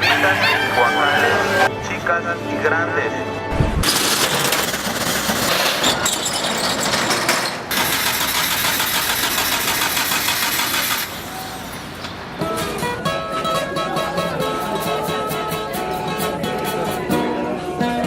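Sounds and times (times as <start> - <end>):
traffic engine rumble: 3.5 - 17.8.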